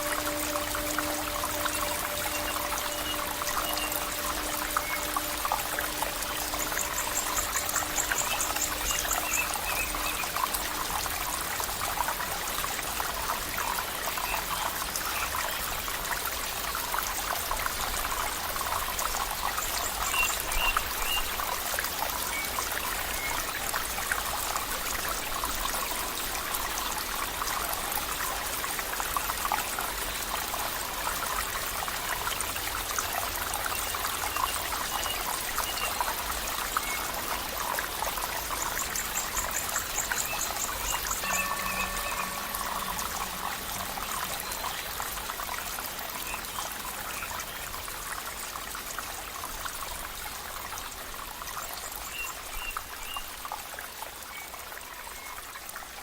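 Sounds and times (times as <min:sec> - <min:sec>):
stream water trickling: 0:00.0 - 0:56.0
faint high chirps: 0:38.6 - 0:44.8.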